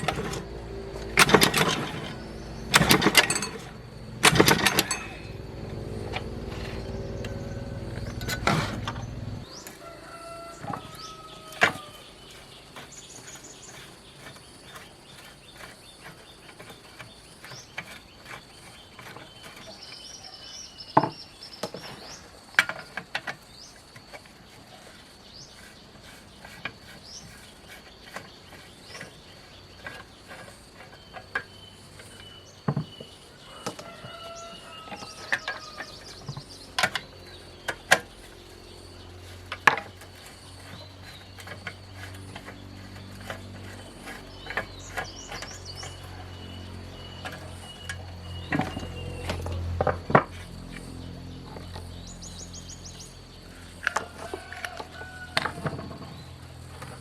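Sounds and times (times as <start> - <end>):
sharp metal clanks: 0.0 - 9.1
insect drone: 0.0 - 16.6
birds chirping: 0.0 - 57.0
low mechanical hum: 0.0 - 57.0
metal tools tapping: 2.8 - 5.4.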